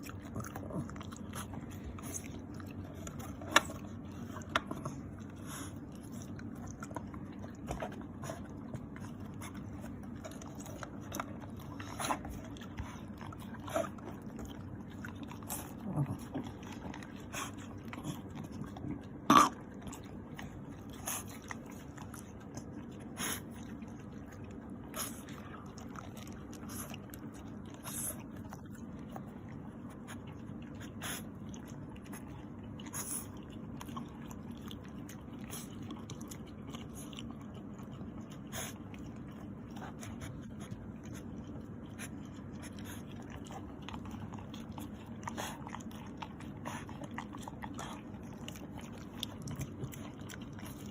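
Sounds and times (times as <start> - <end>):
dog chewing and smacking: 0.0 - 50.9.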